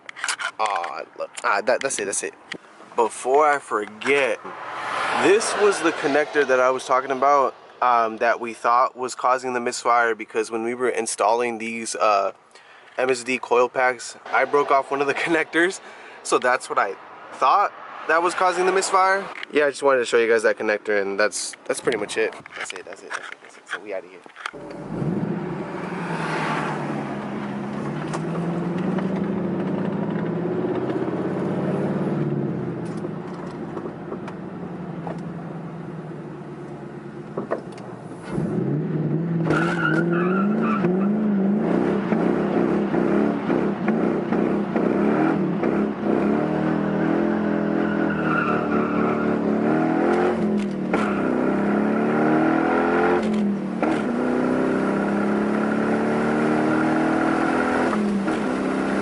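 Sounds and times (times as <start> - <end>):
car engine accelerating hard: 24.6 - 37.3, 38.1 - 59.0.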